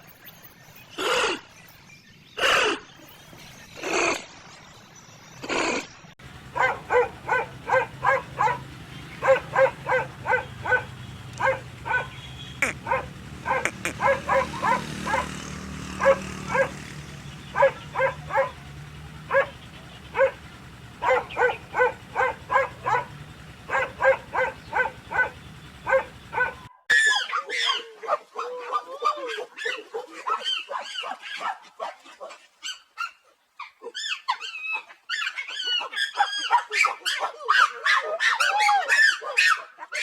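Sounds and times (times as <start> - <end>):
animal giving short pitched calls: 12.2 - 15.3.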